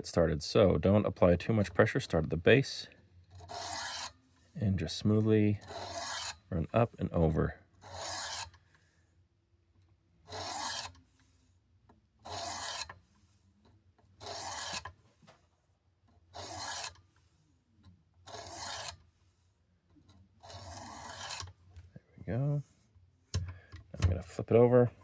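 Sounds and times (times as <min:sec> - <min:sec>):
sharpening stone rasping on knife: 0:03.4 - 0:04.2, 0:05.6 - 0:06.5, 0:07.8 - 0:08.6, 0:10.3 - 0:11.2, 0:12.2 - 0:13.3, 0:14.2 - 0:14.9, 0:16.4 - 0:17.0, 0:18.3 - 0:19.1, 0:20.4 - 0:21.5.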